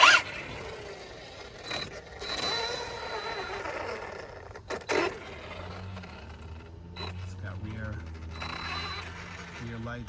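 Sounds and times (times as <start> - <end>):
rc car motor whining: 0.0 - 10.0.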